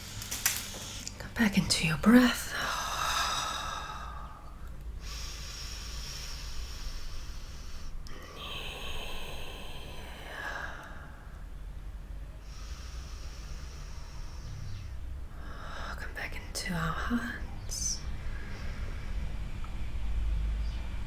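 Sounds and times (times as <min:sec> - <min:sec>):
person breathing deeply: 0:02.5 - 0:15.9, 0:18.0 - 0:20.8.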